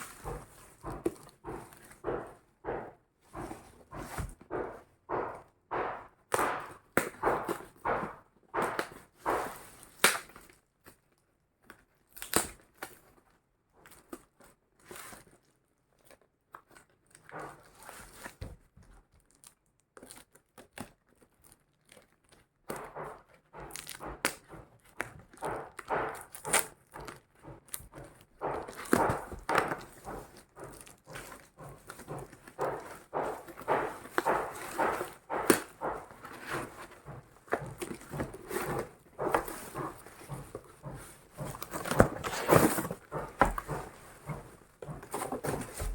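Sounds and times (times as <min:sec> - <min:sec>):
taps and knocks: 0:00.0 - 0:10.2, 0:22.7 - 0:45.9
packaging rustling and crinkling: 0:23.6 - 0:45.9.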